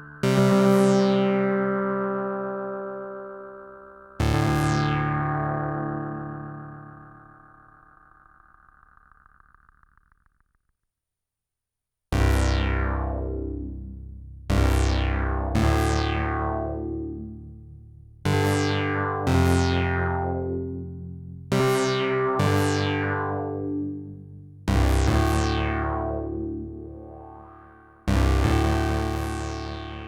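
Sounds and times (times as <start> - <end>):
synthesizer piano-like chords: 0.0 - 8.1.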